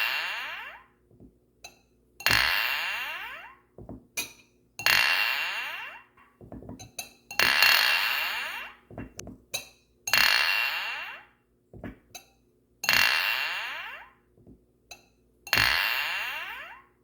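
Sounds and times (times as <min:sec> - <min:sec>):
glass clinking: 0:06.8 - 0:07.6.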